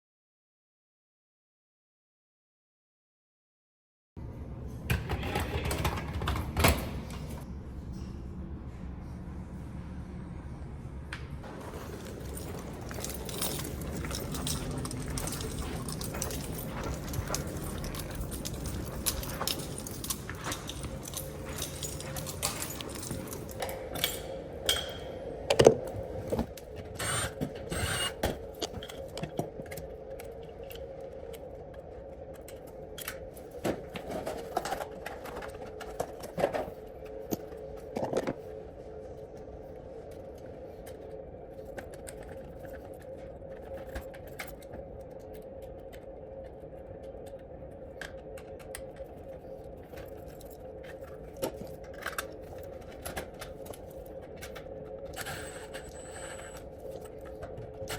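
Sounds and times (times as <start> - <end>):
tools clicking and rattling: 11.7 - 25.7.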